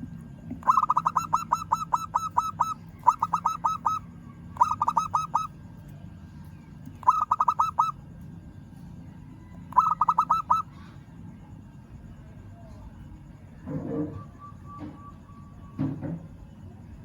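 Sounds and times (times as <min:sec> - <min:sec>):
dove cooing: 0:00.6 - 0:04.0, 0:04.6 - 0:05.5, 0:07.0 - 0:08.0, 0:09.7 - 0:10.7.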